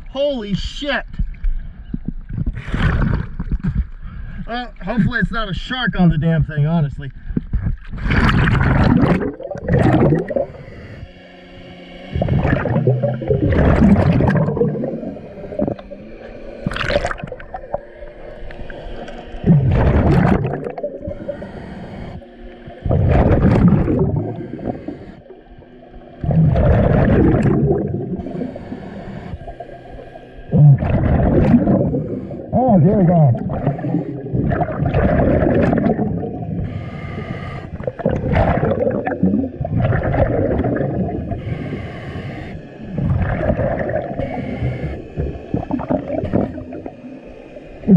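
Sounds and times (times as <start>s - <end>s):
exhaled bubbles gurgling: 1.4s - 4.0s, 7.3s - 11.1s, 12.1s - 47.9s
regulator inhales: 10.4s - 11.8s, 21.0s - 22.5s, 24.2s - 25.4s, 28.2s - 30.5s, 31.8s - 32.6s, 36.6s - 37.9s, 41.3s - 42.9s, 44.2s - 45.4s.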